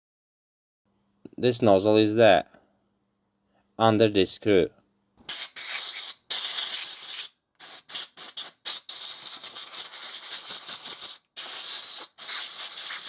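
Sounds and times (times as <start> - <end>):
compressed air blow gun hissing: 5.3 - 13.0.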